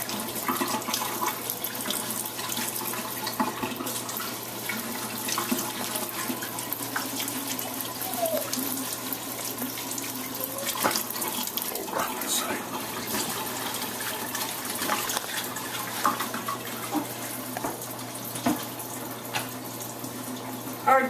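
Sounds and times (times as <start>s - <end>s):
water running from a tap: 0.0s - 21.0s
small knocks and splashes: 9.3s - 12.1s, 13.0s - 19.6s.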